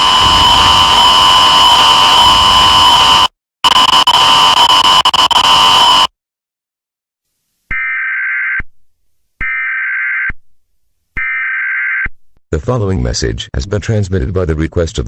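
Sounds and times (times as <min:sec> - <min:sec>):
harsh electronic buzz: 0:00.0 - 0:06.1
warbling data tones: 0:00.0 - 0:06.1.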